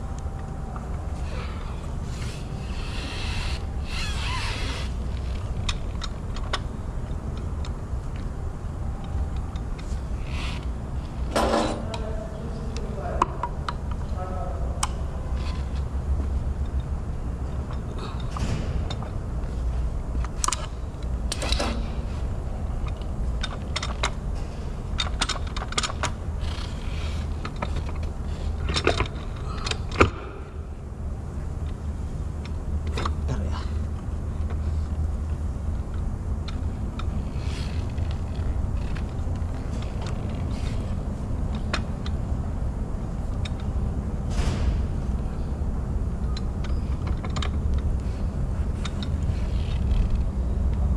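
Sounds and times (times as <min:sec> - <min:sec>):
steady low hum: 0:00.0 - 0:50.9.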